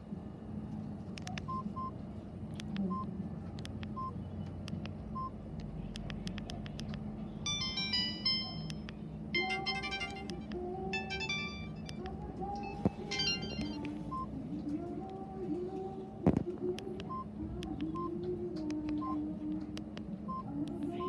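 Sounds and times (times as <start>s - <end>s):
high key-tone beeps: 7.4s - 14.3s
polyphonic ringtone beeping: 7.4s - 14.3s.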